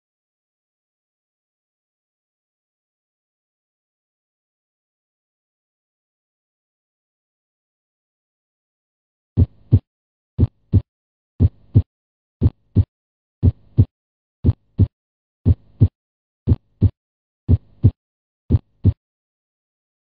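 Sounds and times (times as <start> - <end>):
heartbeat lub-dub: 9.4 - 9.8, 10.4 - 10.8, 11.4 - 15.9, 16.5 - 19.0.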